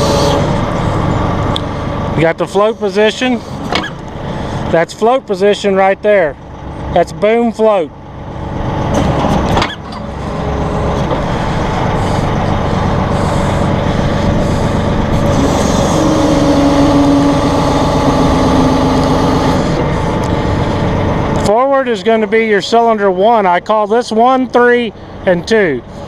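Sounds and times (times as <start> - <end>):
hydraulics working: 0.0 - 25.2
diesel tractor engine running: 0.0 - 26.0
steady tone: 9.9 - 23.2.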